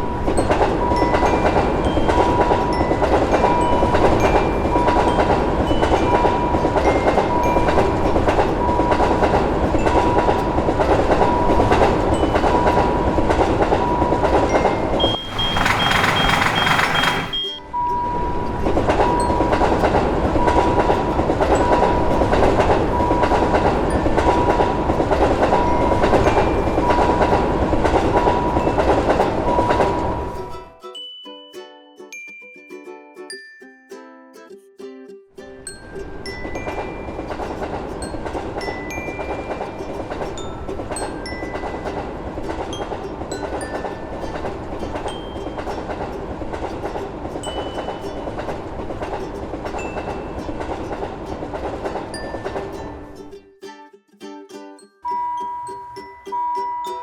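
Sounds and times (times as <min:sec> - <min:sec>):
train passing rumble: 0:00.0 - 0:30.7, 0:35.5 - 0:53.4
high steady tone: 0:00.8 - 0:30.6
level crossing warning beeps: 0:11.4 - 0:19.7.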